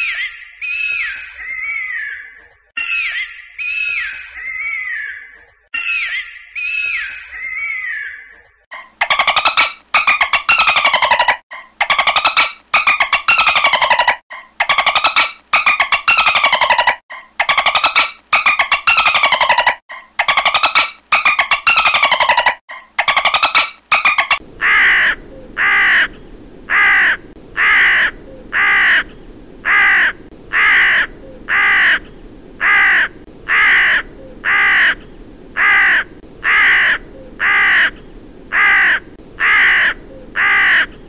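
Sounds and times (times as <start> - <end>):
crow cawing: 24.5 - 41.0.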